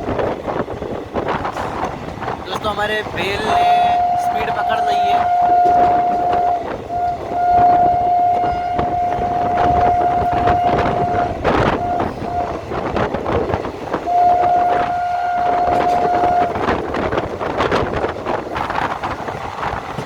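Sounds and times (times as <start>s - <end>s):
train rumble and clatter: 0.0s - 20.0s
train horn: 3.3s - 17.8s.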